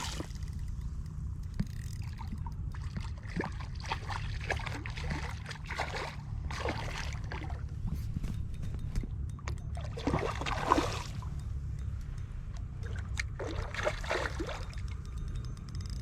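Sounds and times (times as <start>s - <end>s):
steady low rumble: 0.0s - 16.0s
water trickling over rocks: 12.5s - 16.0s.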